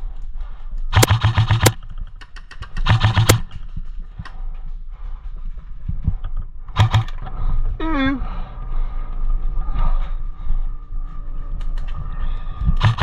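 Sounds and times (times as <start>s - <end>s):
airsoft gun bursts: 1.0s - 1.8s, 2.6s - 3.5s, 12.8s - 13.0s.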